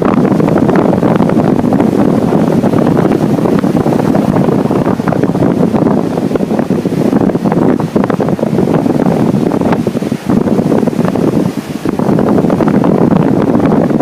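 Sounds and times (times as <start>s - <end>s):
strong wind buffeting microphone: 0.0s - 14.0s.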